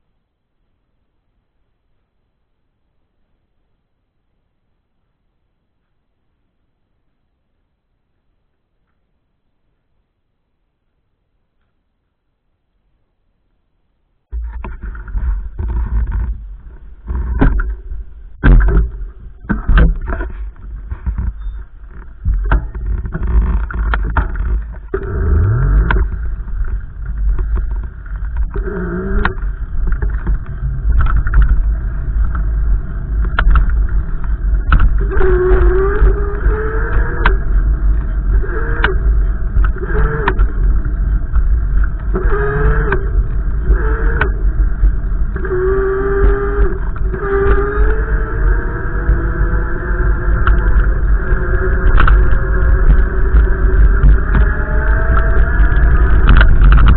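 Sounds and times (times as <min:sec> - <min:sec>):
wavering tones: 0:14.4 - 0:56.9
wind buffeting microphone: 0:14.6 - 0:56.9.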